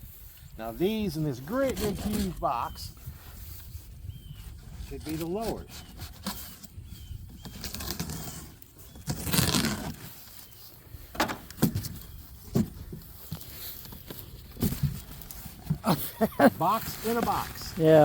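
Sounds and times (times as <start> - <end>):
cardboard box rustling: 11.3 - 18.0.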